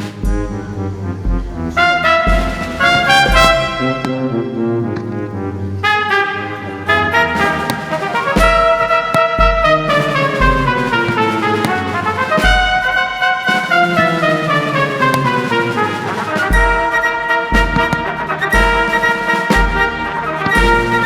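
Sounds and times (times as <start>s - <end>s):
deep low thuds: 0.0s - 4.4s
brass-led orchestral music: 0.0s - 21.0s.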